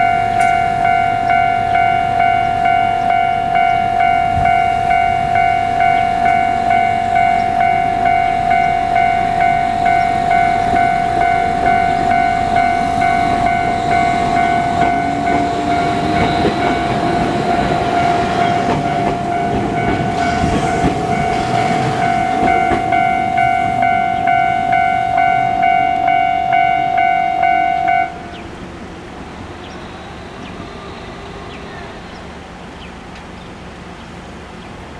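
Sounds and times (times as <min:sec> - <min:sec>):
level-crossing bell ringing: 0:00.0 - 0:28.2
train wheels rumbling and clattering: 0:00.0 - 0:34.9.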